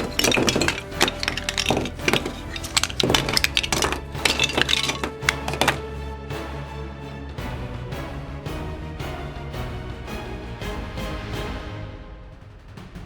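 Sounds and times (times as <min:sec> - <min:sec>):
plastic bricks clicking and clattering: 0:00.0 - 0:05.8.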